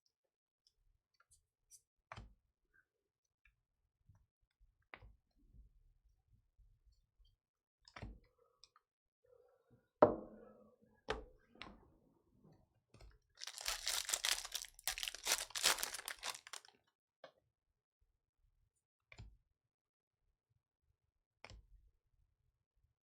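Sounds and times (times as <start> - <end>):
knock on a table: 10.0 - 10.4
foil wrapper crinkling and tearing: 13.4 - 16.7.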